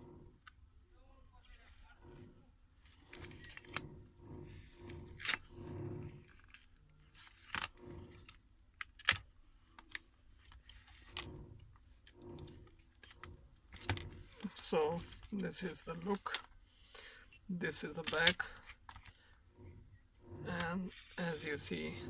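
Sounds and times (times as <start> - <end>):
tools clicking and scraping: 2.0 - 15.5.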